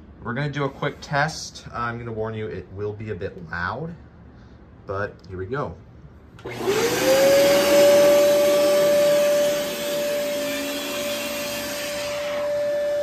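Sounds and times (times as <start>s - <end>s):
vacuum cleaner motor whine: 6.4s - 13.0s.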